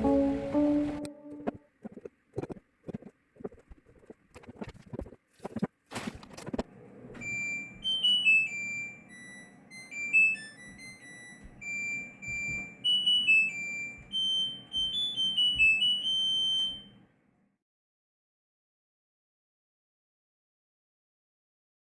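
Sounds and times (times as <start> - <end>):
washing machine beep melody: 0.0 - 1.6, 7.2 - 17.0.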